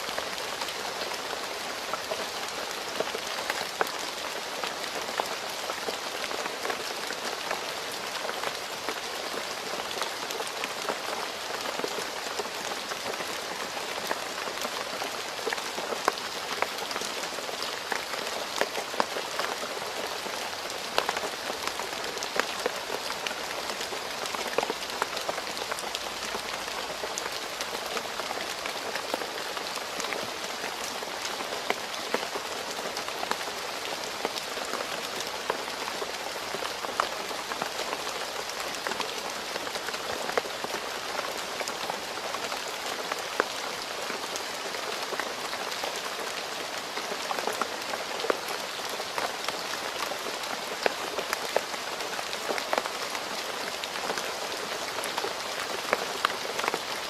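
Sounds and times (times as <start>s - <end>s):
rain pattering on a road: 0.0s - 57.0s.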